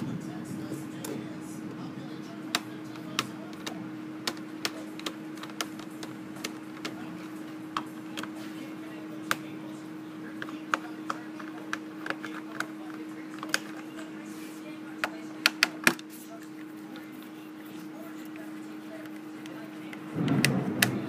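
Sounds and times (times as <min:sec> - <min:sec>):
steady low hum: 0:00.0 - 0:21.0
sharp clicks and taps: 0:02.5 - 0:07.0, 0:10.4 - 0:14.1, 0:15.0 - 0:17.1.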